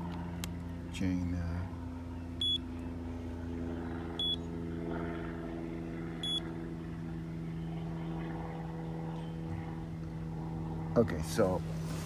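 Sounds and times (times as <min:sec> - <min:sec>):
low mechanical hum: 0:00.0 - 0:12.0
short electronic beeps: 0:04.2 - 0:04.4.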